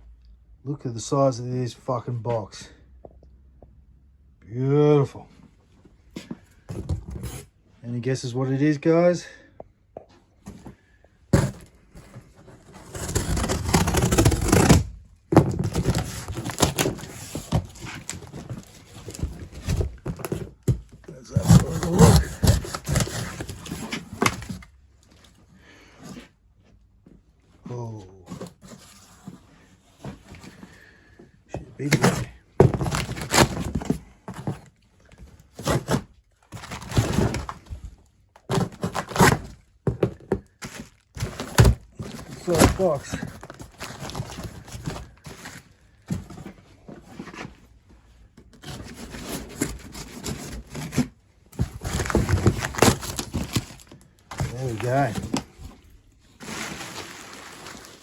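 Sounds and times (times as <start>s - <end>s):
cardboard scraping or tearing: 11.3s - 24.7s, 31.8s - 34.8s, 35.4s - 47.7s, 48.6s - 58.0s.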